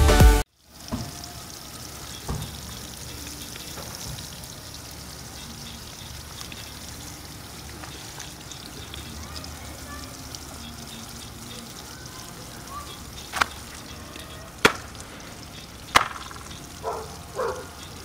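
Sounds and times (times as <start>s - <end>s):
background music: 0.0s - 0.4s
steady hiss: 0.5s - 18.0s.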